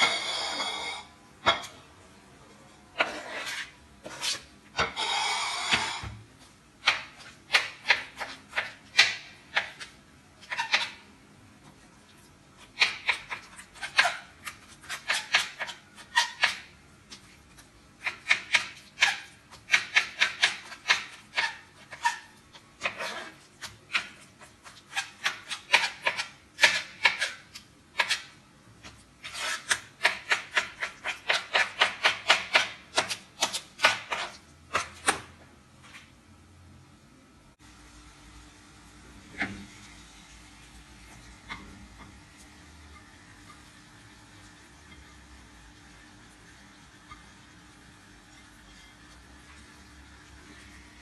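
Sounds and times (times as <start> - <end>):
kitchen utensil scraping food: 0.0 - 1.8, 3.0 - 6.1, 7.1 - 11.0, 20.2 - 28.3, 28.9 - 31.8, 32.5 - 35.1.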